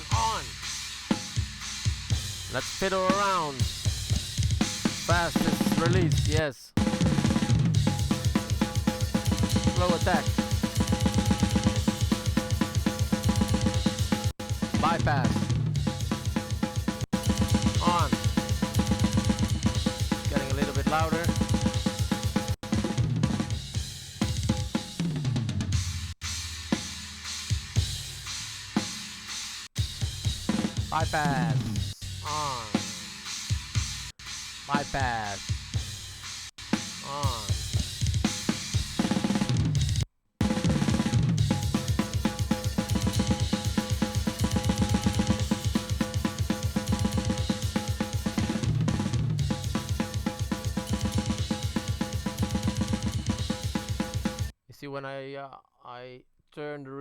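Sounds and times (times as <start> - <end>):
drum kit playing fast: 0.0 - 54.6.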